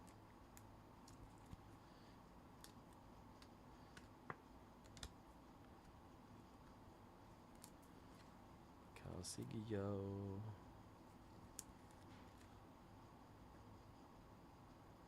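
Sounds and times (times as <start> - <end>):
cards and plastic holders clicking: 3.4 - 5.2.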